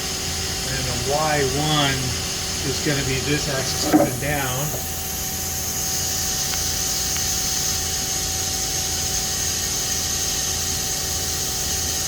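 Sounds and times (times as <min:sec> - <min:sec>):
lathe humming: 0:02.7 - 0:05.1.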